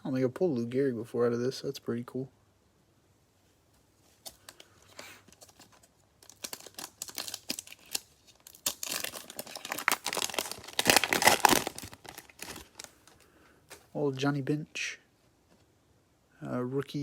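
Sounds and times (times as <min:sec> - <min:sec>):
card pack wrapper crinkling: 0:04.1 - 0:13.9.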